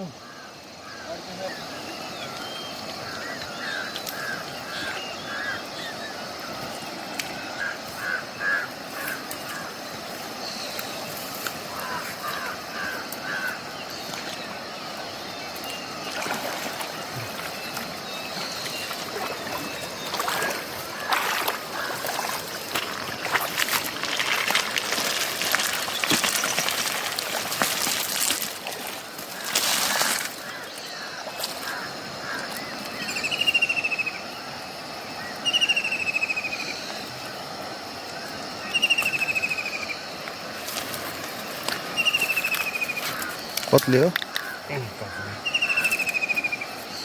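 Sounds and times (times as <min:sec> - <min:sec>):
river water running: 0:00.0 - 0:47.0
water splashing and sloshing: 0:02.0 - 0:33.0, 0:40.1 - 0:47.0
short chirping calls: 0:43.6 - 0:47.0.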